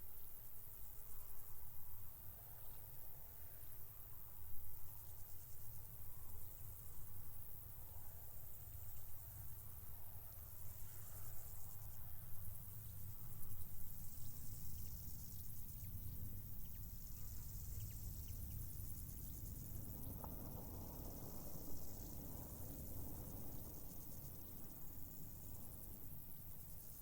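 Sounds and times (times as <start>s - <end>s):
crickets trilling: 5.0s - 27.0s
wind rumble on microphone: 12.0s - 27.0s.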